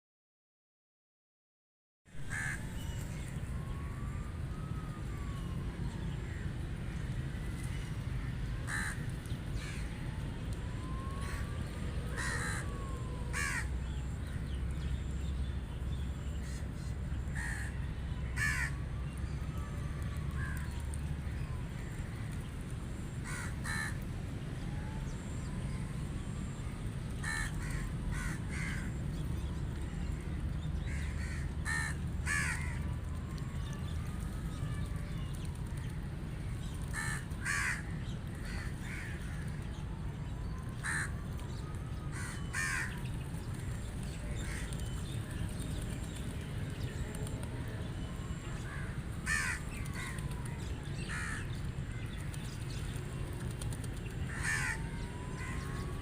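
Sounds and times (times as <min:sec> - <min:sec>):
rooks cawing: 0:02.3 - 0:02.6, 0:08.2 - 0:09.9, 0:12.1 - 0:13.7, 0:17.4 - 0:18.8, 0:23.2 - 0:24.0, 0:27.2 - 0:29.0, 0:30.8 - 0:32.8, 0:36.9 - 0:39.5, 0:40.8 - 0:41.2, 0:42.1 - 0:43.1, 0:48.7 - 0:50.2, 0:51.0 - 0:51.6, 0:54.3 - 0:55.9.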